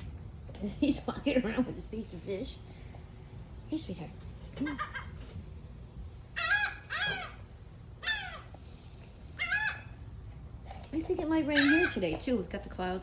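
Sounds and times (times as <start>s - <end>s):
seagulls calling: 6.3s - 8.6s, 9.2s - 10.1s, 11.4s - 12.2s.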